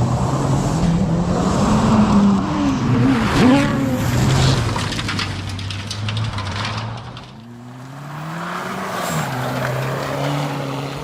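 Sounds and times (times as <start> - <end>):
rally car engine under load: 0.0 - 11.0
crackling clicks: 4.6 - 7.6.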